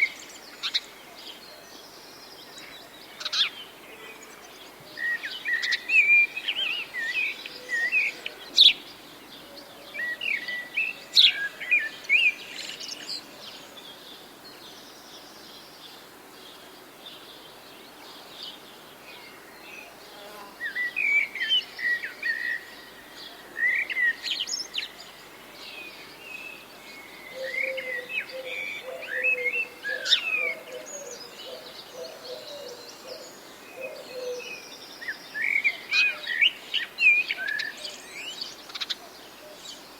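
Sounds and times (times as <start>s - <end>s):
songbirds chirping and singing: 20.3s - 39.9s.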